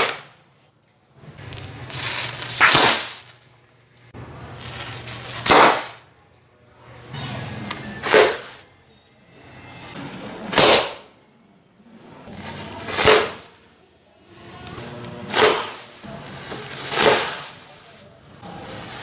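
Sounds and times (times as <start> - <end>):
paper cannon bang: 0.0 - 0.4, 2.2 - 3.4, 5.3 - 6.1, 8.0 - 8.6, 10.5 - 11.1, 12.8 - 13.5, 15.3 - 16.0, 16.6 - 17.7
hiss of fuse burning: 1.4 - 3.4, 4.2 - 5.8, 14.6 - 18.0.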